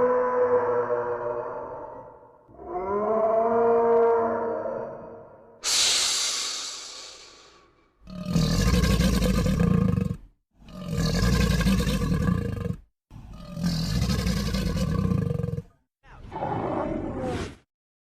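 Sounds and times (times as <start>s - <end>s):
deep creature roar: 0.0s - 5.2s, 6.0s - 17.3s
hiss: 5.6s - 7.8s.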